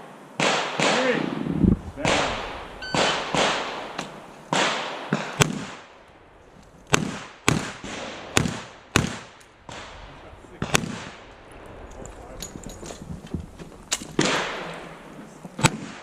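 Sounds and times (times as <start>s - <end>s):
revolver gunshots with echo: 0.4s - 5.9s, 6.9s - 11.3s, 14.2s - 15.0s, 15.6s - 16.0s.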